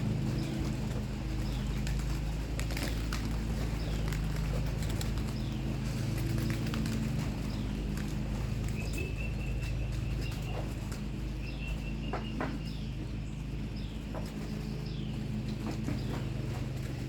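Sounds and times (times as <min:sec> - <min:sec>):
steady low hum: 0:00.0 - 0:17.0
young pigeons peeping: 0:00.0 - 0:17.0.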